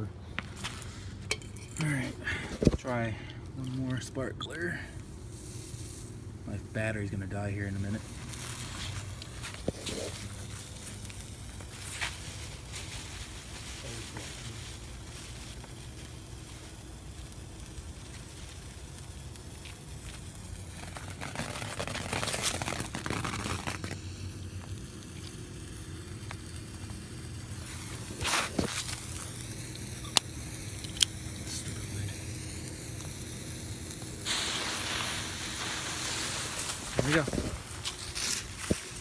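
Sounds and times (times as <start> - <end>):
sparkler crackling and hissing: 4.6 - 6.2, 6.8 - 39.0
arc lighter clicks: 28.8 - 31.8.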